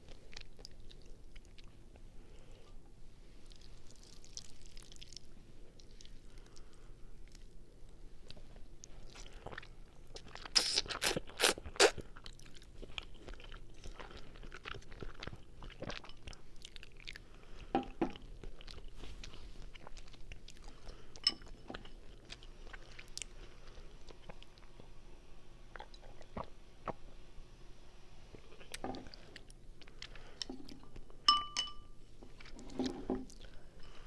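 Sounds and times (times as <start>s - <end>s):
close chewing with mouth clicks: 0.0s - 2.1s, 3.4s - 24.9s, 28.4s - 31.2s.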